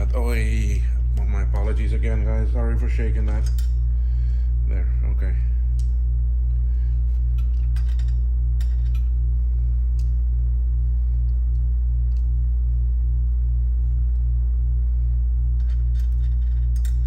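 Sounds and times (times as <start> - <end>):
pulsing electrical hum: 0.0 - 17.0.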